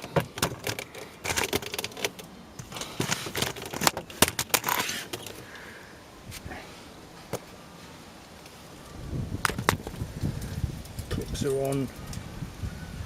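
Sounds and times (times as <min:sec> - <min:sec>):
clicks and metallic rattles: 0:00.0 - 0:05.4.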